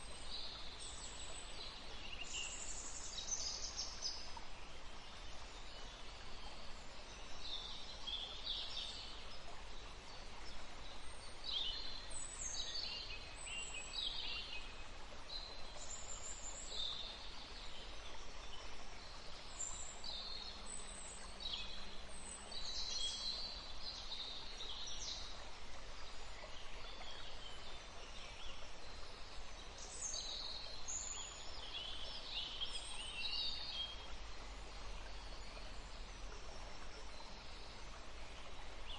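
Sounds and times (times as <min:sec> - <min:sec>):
songbird calls and chirps: 0:00.0 - 0:38.9
stream flowing: 0:00.0 - 0:38.9.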